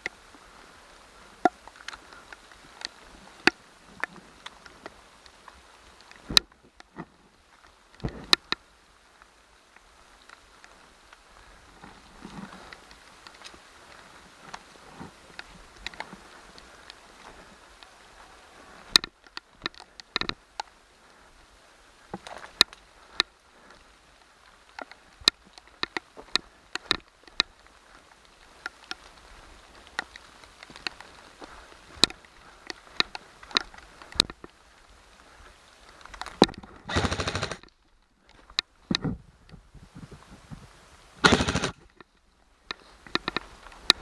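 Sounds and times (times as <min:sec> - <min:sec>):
airsoft rifle full-auto burst: 0:36.9 - 0:37.6, 0:41.2 - 0:41.8
airsoft gun single shots: 0:41.2 - 0:41.7.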